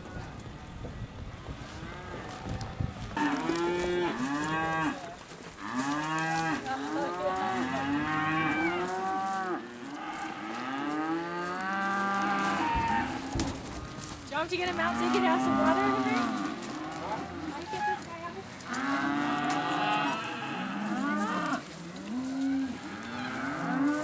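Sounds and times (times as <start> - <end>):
cattle mooing: 5.6 - 14.0, 14.7 - 18.0, 18.7 - 24.0.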